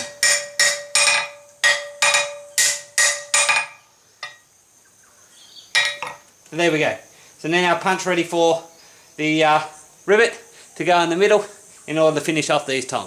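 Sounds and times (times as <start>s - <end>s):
hammer striking steel: 0.0s - 4.4s
metal ringing: 0.0s - 4.5s, 5.8s - 6.2s.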